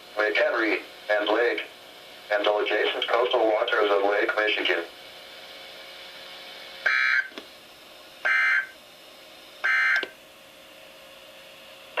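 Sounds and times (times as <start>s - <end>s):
weather radio data tones: 6.9s - 7.3s, 8.3s - 8.7s, 9.6s - 10.0s.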